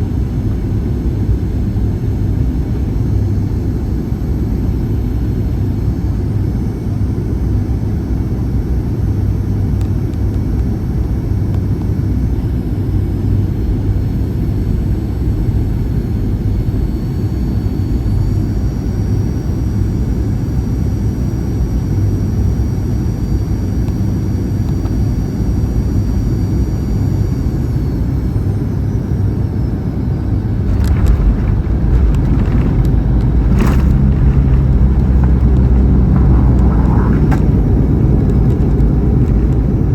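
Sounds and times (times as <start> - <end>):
airplane cabin airflow rumble: 0.0 - 39.9
jet engines whining: 10.2 - 39.9
low landing rumble: 30.3 - 39.9
sharp bumps: 30.6 - 38.1.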